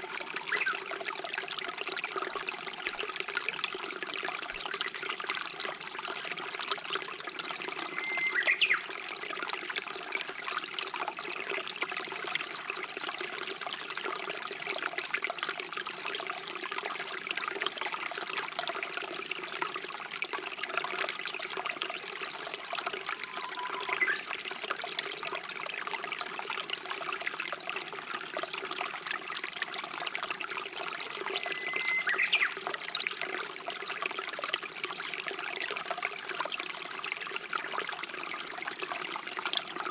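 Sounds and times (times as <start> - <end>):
stream water trickling: 0.0 - 39.9
bird singing whistled note: 0.5 - 0.8, 7.9 - 8.8, 23.1 - 24.3, 31.3 - 32.6.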